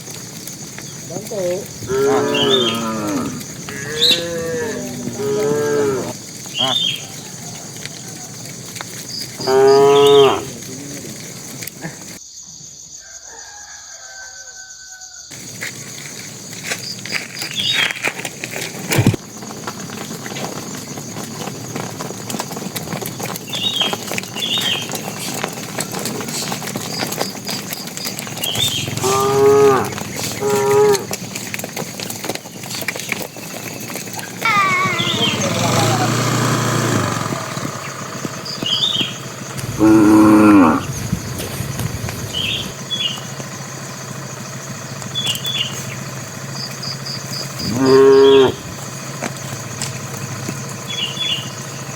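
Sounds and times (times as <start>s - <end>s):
cattle mooing: 1.7s - 7.0s, 9.4s - 11.3s, 28.6s - 31.2s, 34.4s - 37.6s, 39.6s - 42.7s, 47.6s - 48.8s
high bird chirps: 37.8s - 43.3s.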